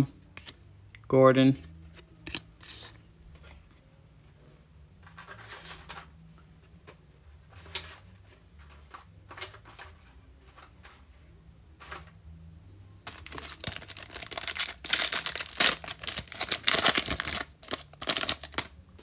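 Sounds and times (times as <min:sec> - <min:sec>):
foil wrapper crinkling: 0:13.1 - 0:18.7.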